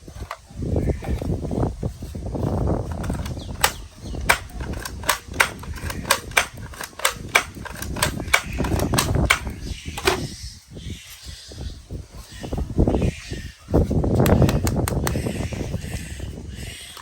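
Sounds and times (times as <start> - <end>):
toy gun firing shots: 3.0 - 10.3.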